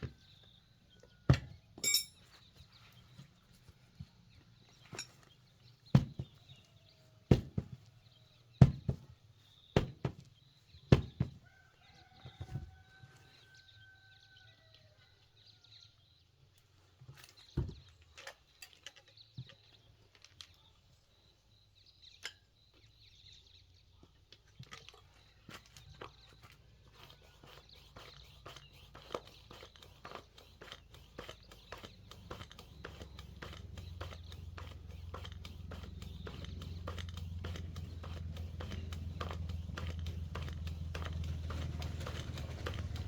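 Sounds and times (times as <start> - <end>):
rooster crowing: 11.4 - 15.2.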